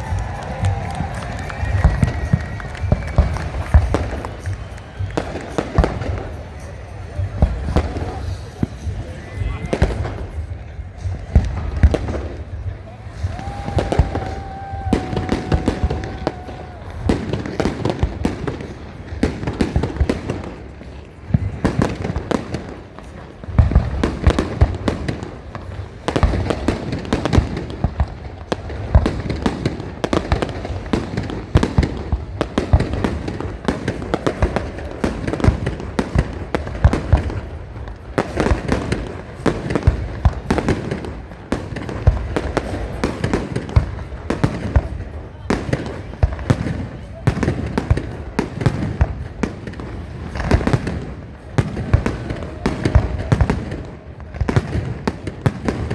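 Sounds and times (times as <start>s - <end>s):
fireworks whistle: 0.0s - 20.4s
fireworks bangs and crackles: 0.0s - 55.9s
fireworks booms: 0.0s - 55.9s.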